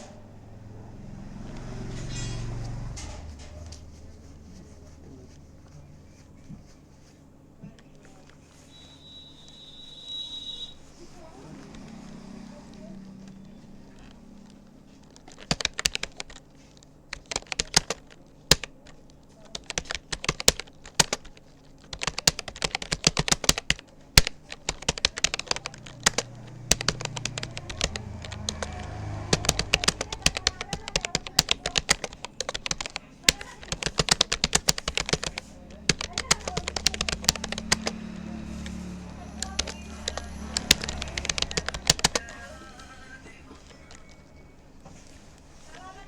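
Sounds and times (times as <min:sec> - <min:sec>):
keyboard key clicks: 0:15.1 - 0:16.4, 0:17.1 - 0:38.0, 0:39.4 - 0:42.3.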